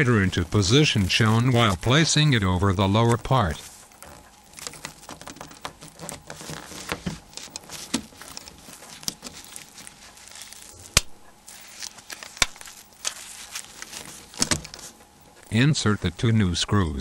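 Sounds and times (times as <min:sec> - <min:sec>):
plastic phone parts clicking: 0:04.0 - 0:11.1.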